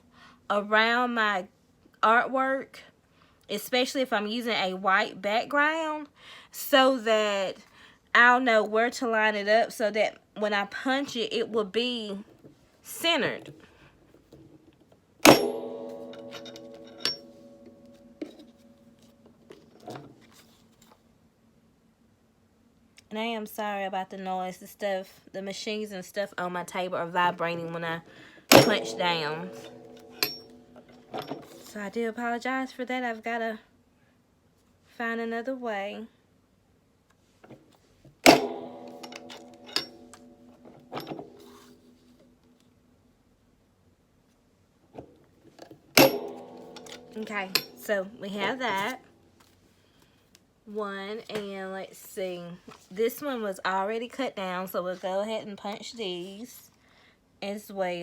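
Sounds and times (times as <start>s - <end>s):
graphic punch clunk: 15.3s - 19.2s, 28.5s - 31.6s, 38.3s - 41.8s, 46.0s - 49.0s
metallic ringing: 15.3s - 20.0s, 28.5s - 31.7s, 38.3s - 42.4s, 46.0s - 49.1s.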